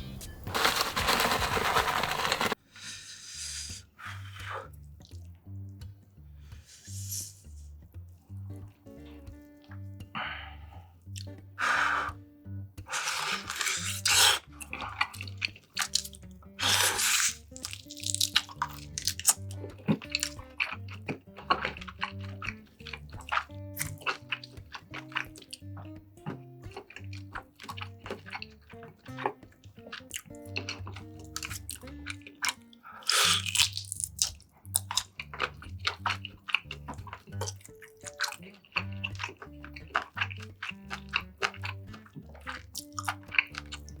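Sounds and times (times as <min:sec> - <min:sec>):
soft background music: 0:03.4 - 0:44.0
wet chewing and smacking: 0:04.1 - 0:05.9, 0:11.0 - 0:11.4, 0:12.8 - 0:44.0
loud bite or slurp: 0:06.6 - 0:07.5, 0:12.9 - 0:25.3, 0:29.9 - 0:36.7.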